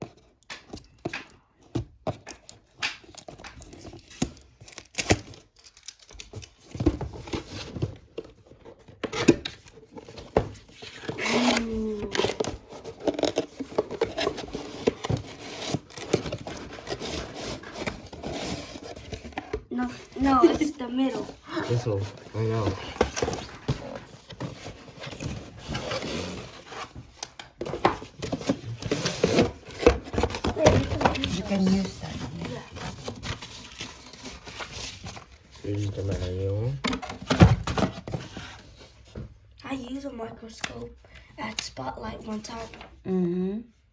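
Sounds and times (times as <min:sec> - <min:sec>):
box being unpacked: 0:00.0 - 0:39.4
rustling and scraping: 0:02.1 - 0:39.5
packaging crinkling and tearing: 0:02.2 - 0:07.6, 0:09.3 - 0:38.2.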